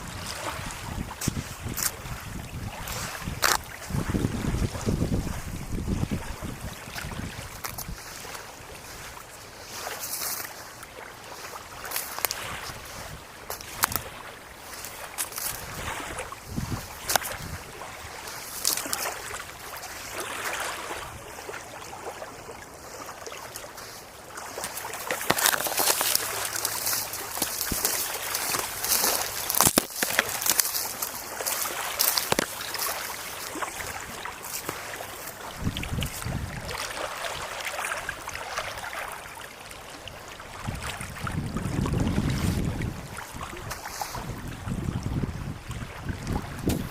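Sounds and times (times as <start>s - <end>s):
gusty wind on microphone: 0.0s - 8.2s, 15.5s - 18.2s, 35.4s - 36.8s, 40.6s - 46.9s.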